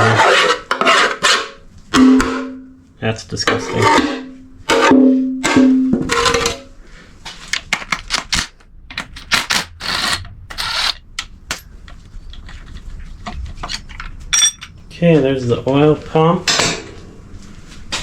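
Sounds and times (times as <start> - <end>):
metal tools clinking and clattering: 14.3 - 14.8
ringing metal tone: 14.3 - 14.8.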